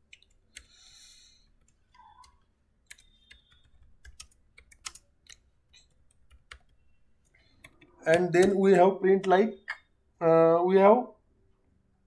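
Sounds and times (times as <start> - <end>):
keyboard typing: 0.1 - 0.8, 1.4 - 9.8.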